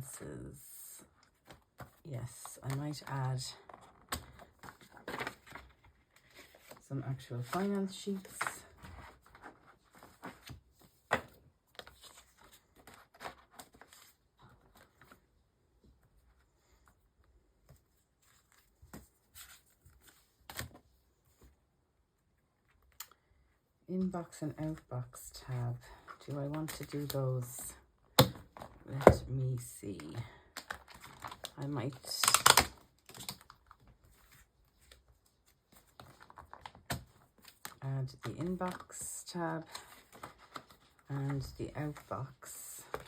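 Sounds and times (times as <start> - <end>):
paper rustling: 1.3 - 15.2, 17.7 - 21.5, 30.5 - 43.0
paper sheets rustling: 28.6 - 43.0.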